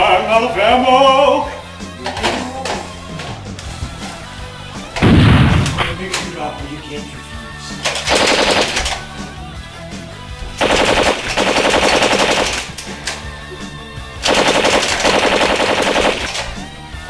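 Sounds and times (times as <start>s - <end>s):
rock music: 0.0s - 17.0s
machine-gun fire bursts: 7.9s - 9.1s, 10.6s - 12.8s, 14.2s - 16.6s.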